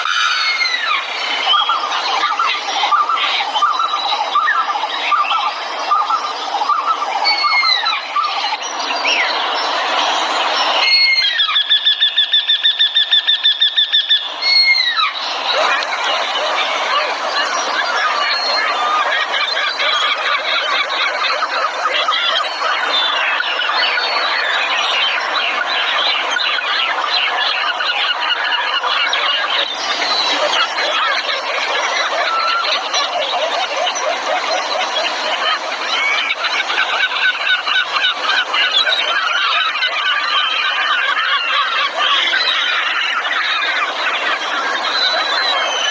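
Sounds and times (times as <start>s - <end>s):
bird trilling: 0.0s - 9.3s, 10.5s - 20.8s
songbird chirping: 0.0s - 45.9s.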